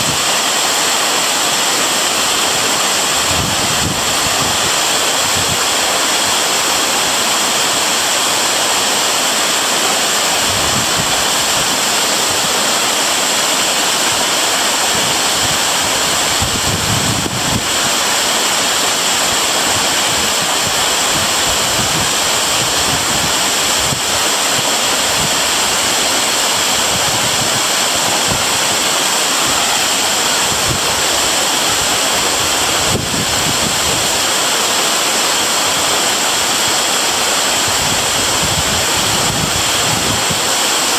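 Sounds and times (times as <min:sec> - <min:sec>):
waterfall rushing: 0:00.0 - 0:40.9
wind gusts on microphone: 0:02.5 - 0:06.4, 0:10.4 - 0:12.7, 0:14.8 - 0:18.1, 0:19.2 - 0:34.4, 0:36.6 - 0:40.9.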